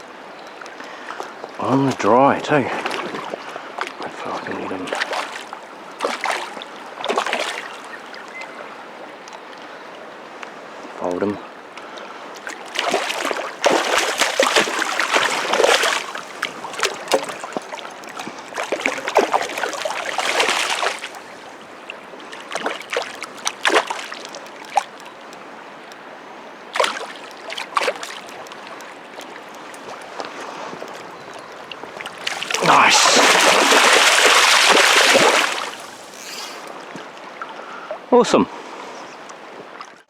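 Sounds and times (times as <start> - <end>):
river water flowing: 0.0 - 40.0
water splashing: 1.7 - 8.4, 11.8 - 37.6.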